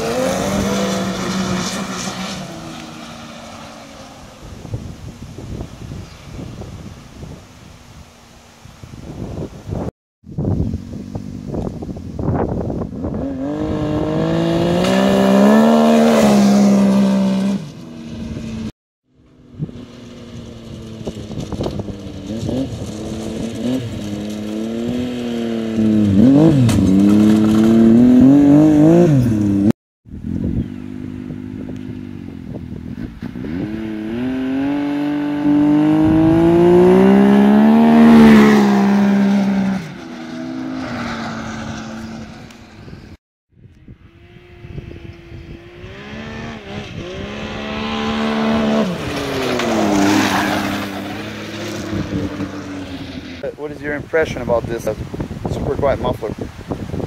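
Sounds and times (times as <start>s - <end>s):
snowmobile engine accelerating: 0.0s - 3.6s, 13.0s - 18.7s, 20.6s - 29.7s, 33.0s - 42.6s, 43.9s - 53.9s.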